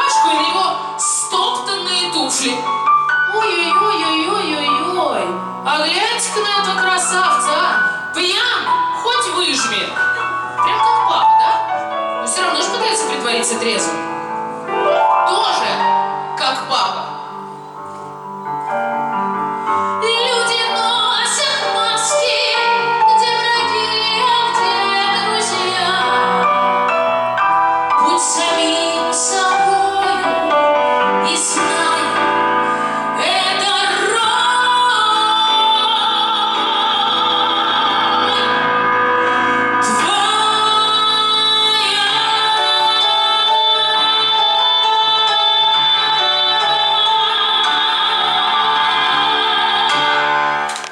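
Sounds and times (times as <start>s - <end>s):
woman singing opera: 0.0s - 2.7s, 3.3s - 9.9s, 20.0s - 26.6s, 28.0s - 50.9s
instrumental accompaniment: 0.0s - 50.9s.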